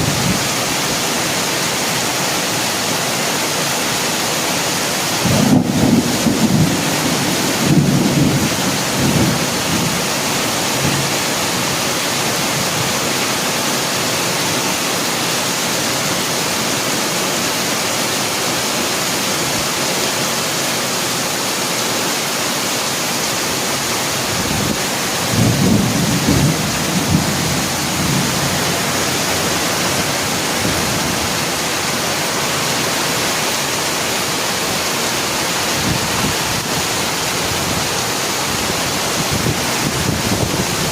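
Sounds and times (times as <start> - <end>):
heavy rain pouring: 0.0 - 40.9
thunder rumbling: 5.2 - 11.8, 24.3 - 31.9.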